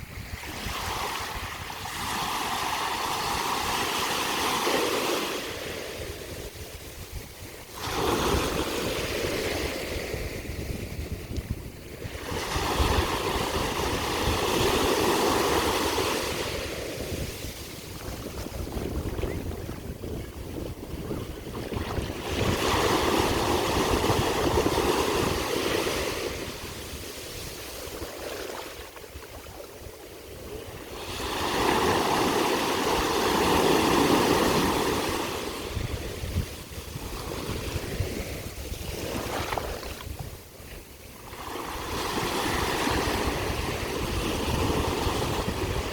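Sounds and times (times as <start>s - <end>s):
waves breaking on shore: 0.0s - 45.9s
low rumble of sea: 4.5s - 45.9s.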